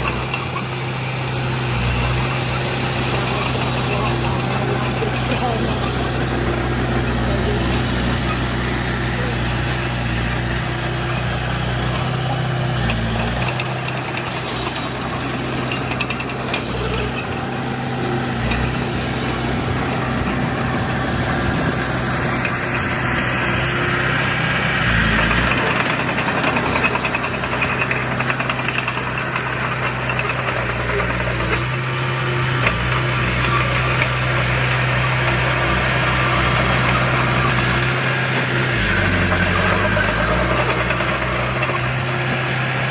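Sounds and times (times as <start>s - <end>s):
heavy diesel engine running: 0.0s - 42.9s.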